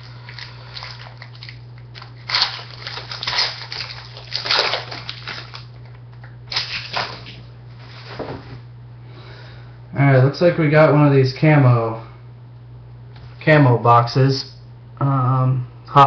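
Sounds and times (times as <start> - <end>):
foil wrapper tearing and crinkling: 0.0 - 7.4.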